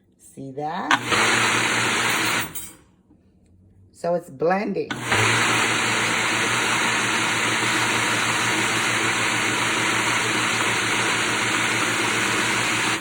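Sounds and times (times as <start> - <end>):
blender motor whirring: 0.9 - 2.6, 4.9 - 13.0.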